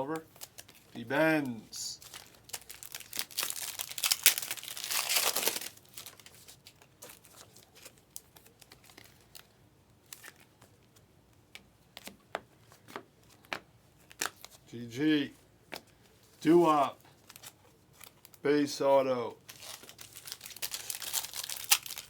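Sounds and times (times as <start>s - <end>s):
foil wrapper tearing and crinkling: 2.0s - 9.5s, 19.4s - 22.0s.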